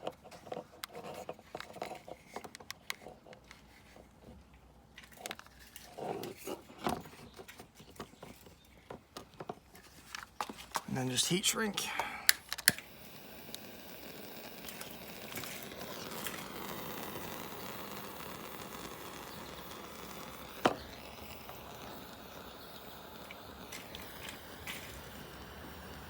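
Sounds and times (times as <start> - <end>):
heat tool hissing: 11.1 - 26.0
sharp click: 12.3 - 12.9.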